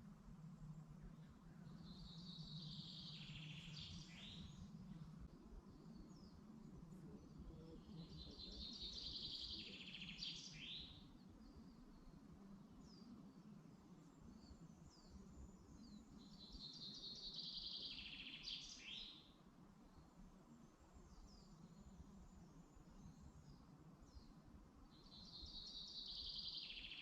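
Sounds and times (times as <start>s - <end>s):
low steady background rumble: 0.0s - 17.2s.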